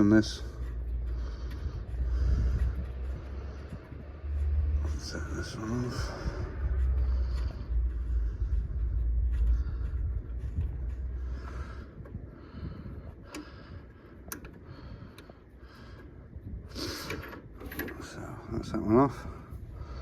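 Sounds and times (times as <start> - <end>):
sharp clicks: 13.2 - 15.4.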